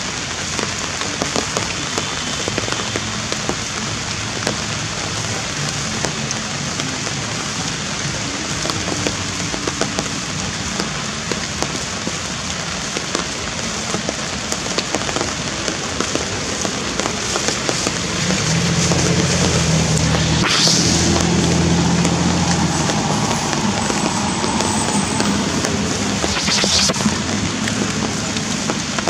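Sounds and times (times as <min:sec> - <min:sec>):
heavy rain pattering: 0:00.0 - 0:29.0
engine humming: 0:15.9 - 0:29.0.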